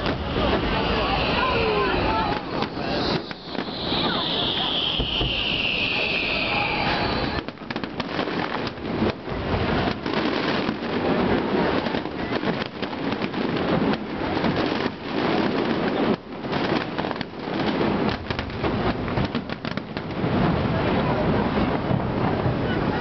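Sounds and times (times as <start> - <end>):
fireworks booms and crackles: 0.0 - 23.0.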